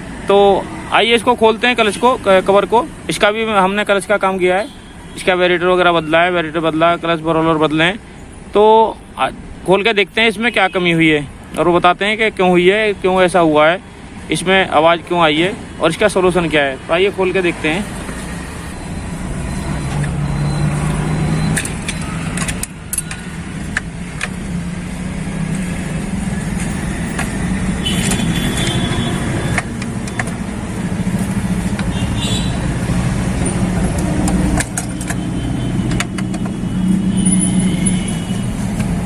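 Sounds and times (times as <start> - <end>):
hand tools clinking: 21.4 - 24.4
vehicle engine running: 22.6 - 35.2.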